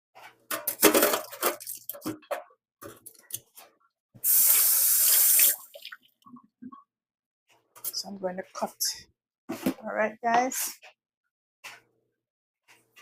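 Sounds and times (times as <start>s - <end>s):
water splashing in a sink: 0.7s - 2.3s, 4.2s - 6.9s.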